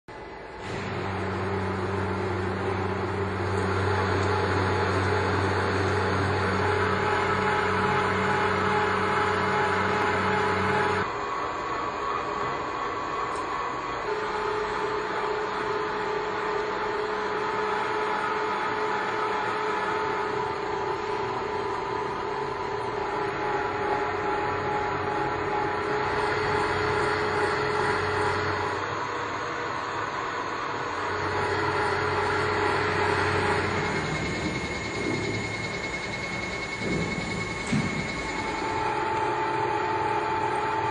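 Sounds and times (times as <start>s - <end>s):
milling machine motor hum: 0.1s - 40.9s.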